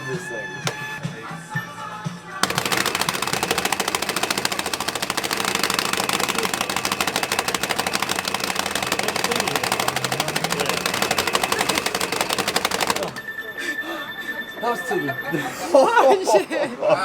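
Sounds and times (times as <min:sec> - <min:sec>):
arcade game button rapid hitting: 0:02.4 - 0:13.2.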